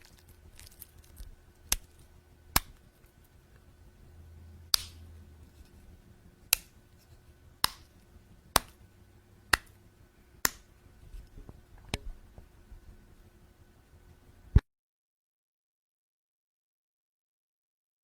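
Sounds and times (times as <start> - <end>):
sharp hand slaps: 4.7 - 5.0.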